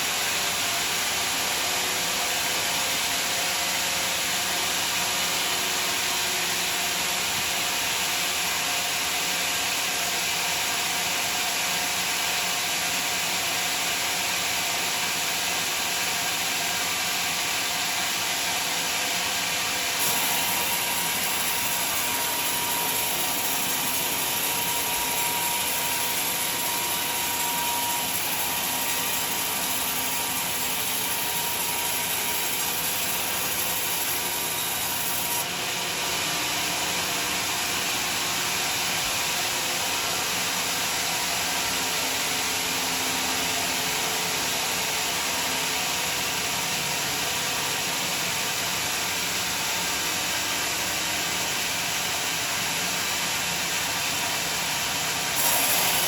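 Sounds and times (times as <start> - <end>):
saw cutting through log: 15.8 - 47.2, 49.1 - 56.0.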